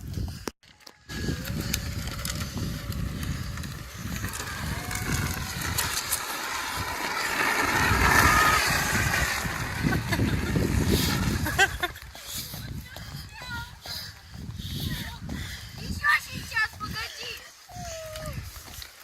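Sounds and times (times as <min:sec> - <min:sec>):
wind rumble on microphone: 0:00.0 - 0:18.9
vehicle engine: 0:01.1 - 0:11.7.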